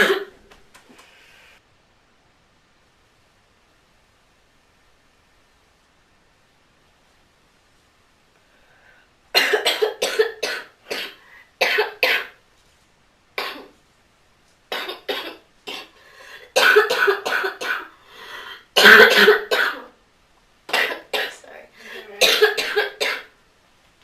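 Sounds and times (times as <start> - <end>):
person coughing: 0.0 - 0.3, 9.4 - 12.4, 13.4 - 13.7, 14.7 - 17.9, 18.8 - 19.9, 20.7 - 21.4, 22.0 - 23.3.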